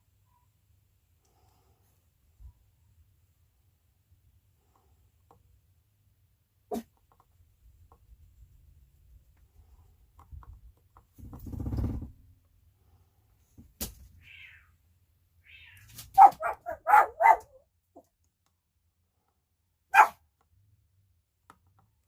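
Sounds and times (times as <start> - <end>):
dog barking: 16.2 - 17.6, 19.9 - 20.2.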